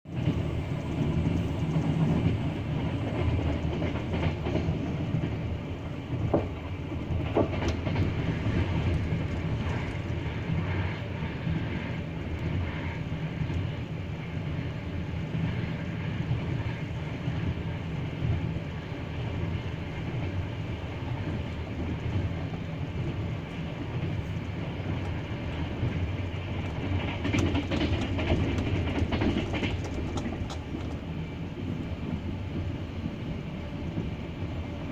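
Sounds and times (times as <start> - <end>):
train running gear rumble: 0.1 - 34.9
wheels knocking over rail joints: 26.5 - 31.1.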